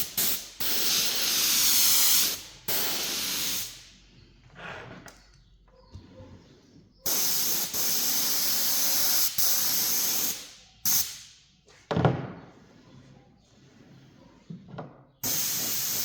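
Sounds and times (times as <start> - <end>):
spray hissing: 0.0 - 3.8, 7.1 - 11.3, 15.2 - 16.0.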